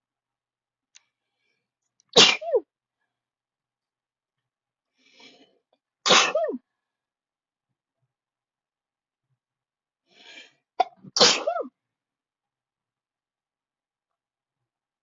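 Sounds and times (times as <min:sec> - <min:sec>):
person sneezing: 0:02.2 - 0:02.6, 0:06.1 - 0:06.6, 0:10.8 - 0:11.7.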